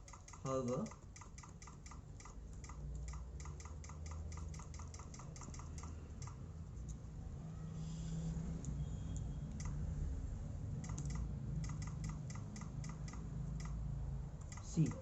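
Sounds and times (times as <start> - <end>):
repeating computer click sound: 0.0 - 6.4, 10.8 - 13.8, 14.4 - 15.0.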